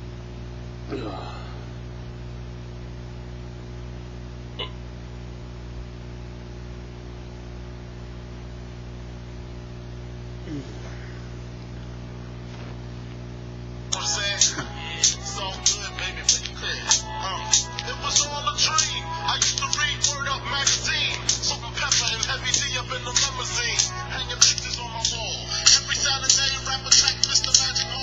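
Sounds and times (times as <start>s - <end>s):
low electrical hum: 0.0s - 28.0s.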